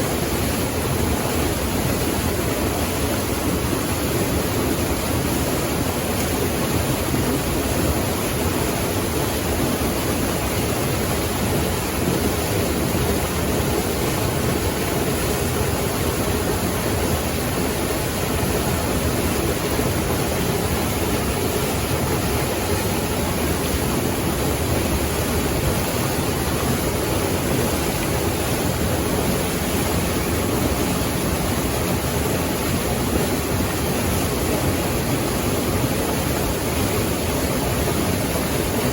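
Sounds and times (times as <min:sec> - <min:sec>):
flowing water rushing: 0:00.0 - 0:38.9.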